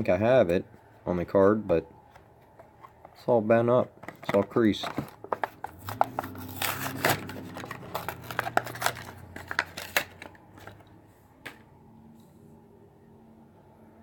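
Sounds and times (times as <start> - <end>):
plastic blister pack crackling and tearing: 4.7 - 10.8.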